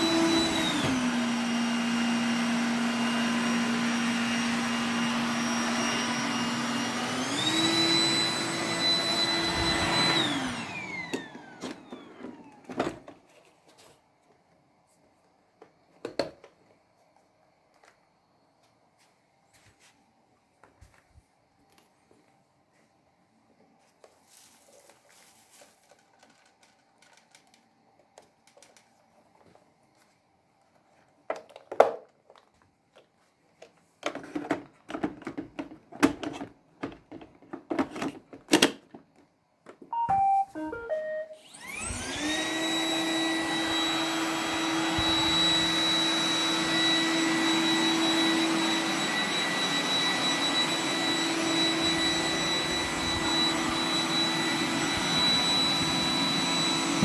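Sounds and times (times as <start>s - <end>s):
vacuum motor whine: 0.0s - 13.0s, 40.0s - 57.0s
robot vacuum beep tune: 40.0s - 47.2s, 47.8s - 57.0s.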